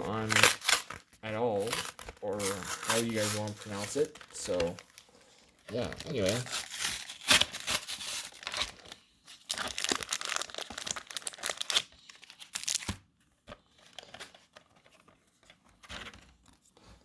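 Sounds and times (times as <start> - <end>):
plastic pack crinkling and tearing: 0.0 - 5.0, 5.6 - 13.0.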